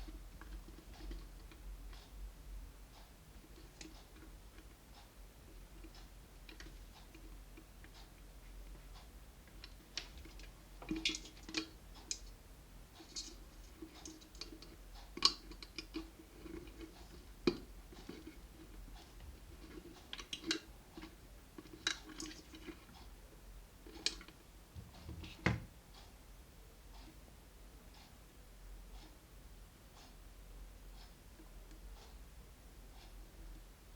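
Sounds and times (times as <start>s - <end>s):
small objects clicking and tapping: 9.6s - 12.3s, 13.0s - 18.4s.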